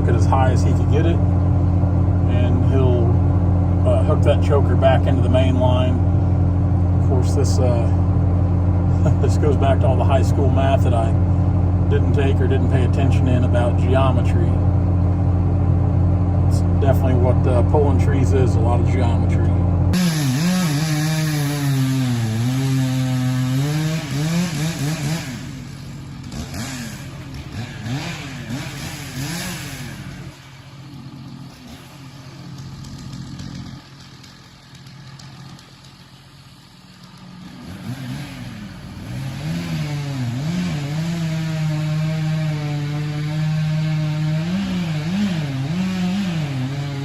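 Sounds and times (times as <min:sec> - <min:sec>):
engine revving: 0:00.0 - 0:47.0.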